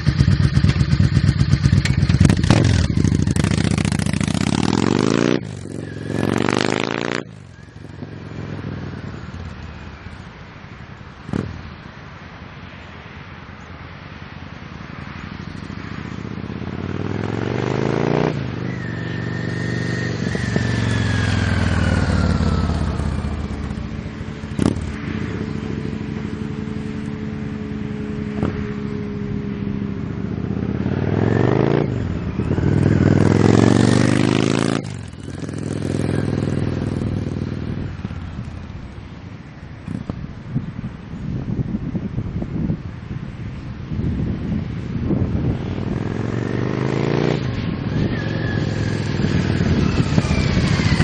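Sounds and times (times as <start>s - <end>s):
motorcycle engine revving: 0.0s - 9.6s, 15.6s - 38.5s, 44.1s - 51.0s.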